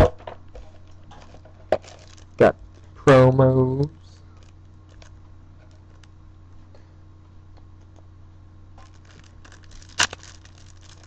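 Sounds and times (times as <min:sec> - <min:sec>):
foil wrapper crinkling: 0:01.1 - 0:03.0, 0:04.3 - 0:06.1, 0:08.8 - 0:11.0
foil pack tearing: 0:01.2 - 0:02.9, 0:08.8 - 0:11.0.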